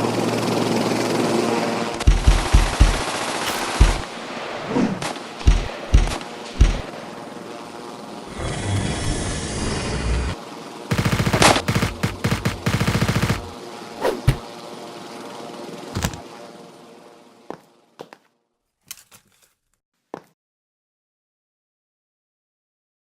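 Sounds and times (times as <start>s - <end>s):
automatic gunfire bursts: 2.0s - 4.1s, 10.9s - 13.5s.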